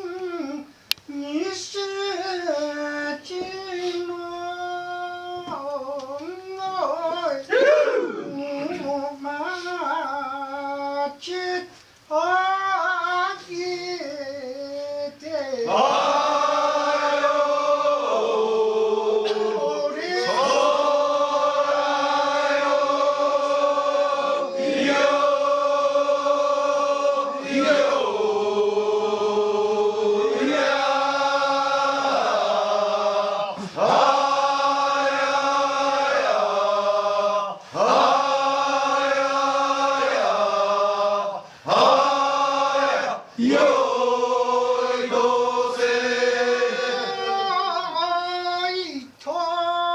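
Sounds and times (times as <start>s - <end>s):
group chanting long notes: 6.8s - 9.2s, 15.6s - 48.0s.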